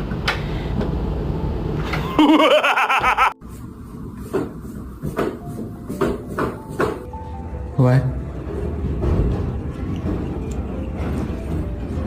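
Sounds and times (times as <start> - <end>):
person laughing: 2.0 - 3.4.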